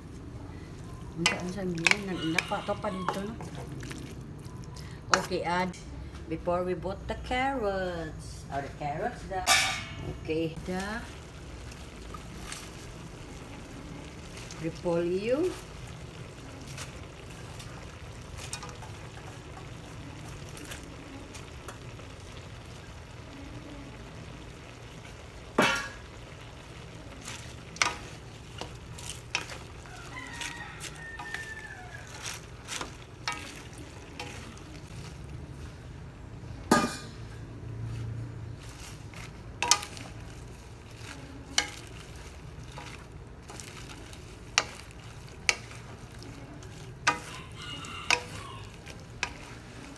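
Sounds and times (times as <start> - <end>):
utensil scraping a pan: 27.2 - 35.2, 41.1 - 49.9.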